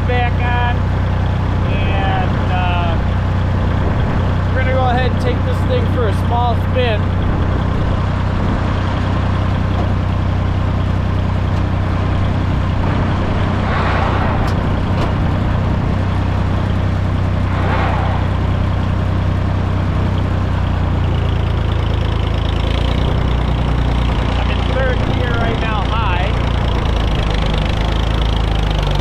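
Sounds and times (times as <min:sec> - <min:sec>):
tractor diesel engine running: 0:00.0 - 0:29.0
brief rushing noises: 0:13.6 - 0:15.3, 0:17.3 - 0:19.0.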